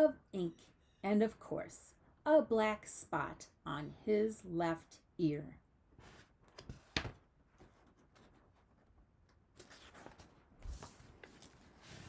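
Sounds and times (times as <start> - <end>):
page turning rustle: 9.4 - 12.0.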